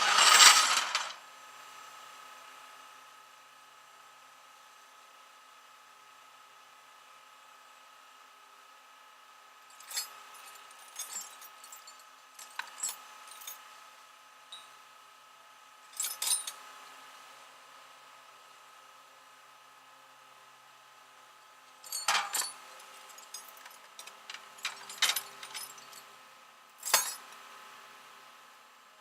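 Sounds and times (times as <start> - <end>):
metal tools clinking: 0.0 - 1.1, 9.8 - 13.6, 16.0 - 16.6, 21.8 - 26.0, 26.8 - 27.3
faint steady hum: 0.0 - 29.0.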